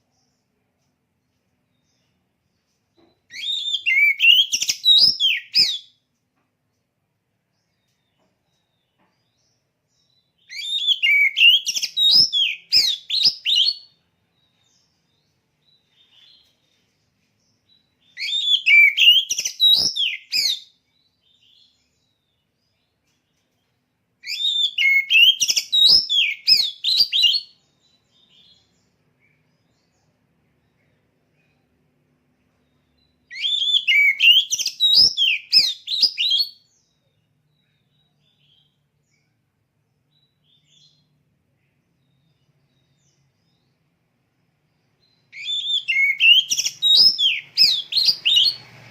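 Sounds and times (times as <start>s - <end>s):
bird singing whistled notes: 3.3s - 6.0s, 9.3s - 16.6s, 17.7s - 22.9s, 24.2s - 30.0s, 32.6s - 39.2s, 40.1s - 43.8s, 44.7s - 48.9s.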